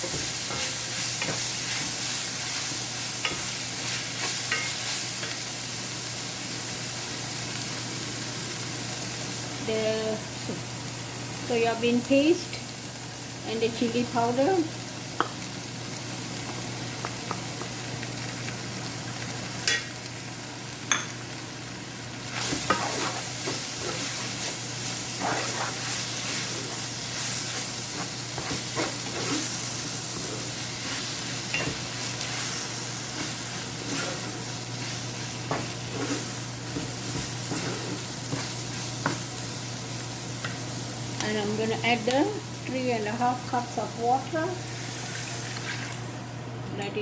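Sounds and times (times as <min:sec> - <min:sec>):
food sizzling in a pan: 0:00.0 - 0:46.5
utensil scraping a pan: 0:22.3 - 0:32.6, 0:33.2 - 0:36.3.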